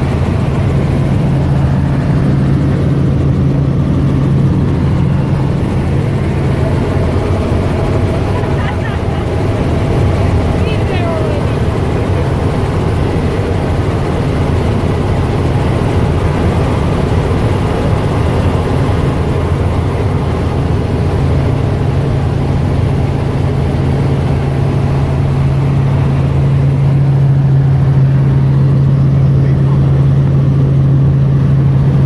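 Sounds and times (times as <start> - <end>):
low hum: 0.0 - 23.8
helicopter engine and rotor drone: 0.0 - 32.0.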